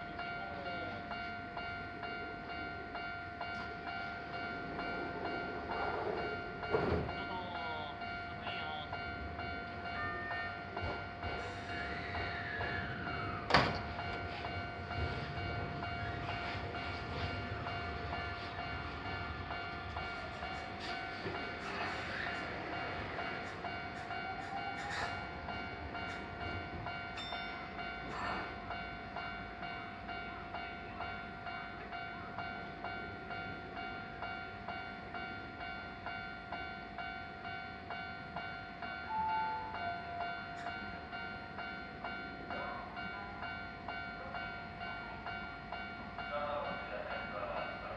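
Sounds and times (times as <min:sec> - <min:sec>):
electric train whine: 0:00.0 - 0:47.9
level crossing alarm ringing: 0:00.0 - 0:47.9
sharp clunk: 0:13.5 - 0:13.9.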